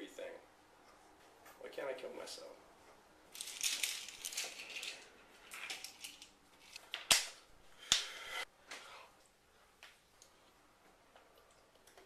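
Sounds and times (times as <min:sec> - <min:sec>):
rustling handling noise: 0:03.3 - 0:06.9.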